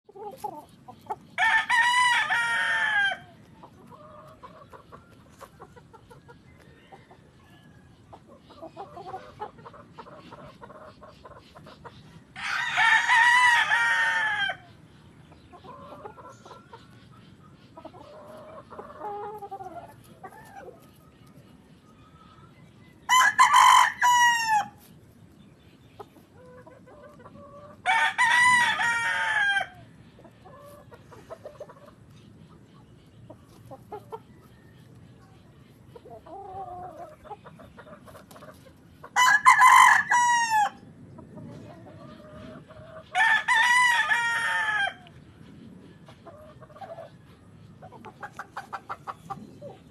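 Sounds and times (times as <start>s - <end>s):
roosters crowing: 0.1s - 9.4s, 12.0s - 14.8s, 22.0s - 24.9s, 26.5s - 31.5s, 39.0s - 45.3s.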